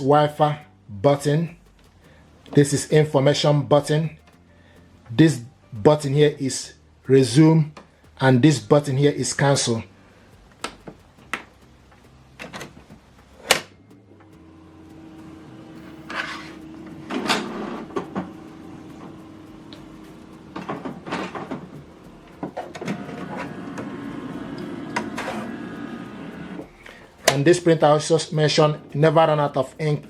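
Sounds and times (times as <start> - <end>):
printer motor hum: 14.1 - 26.9
printer carriage whirring and clunking: 14.5 - 26.7
printer clicks: 15.8 - 26.7.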